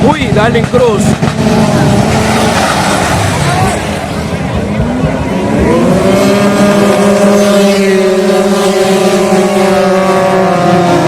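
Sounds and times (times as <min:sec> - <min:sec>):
scooter engine high-pitched buzz: 0:05.2 - 0:11.0.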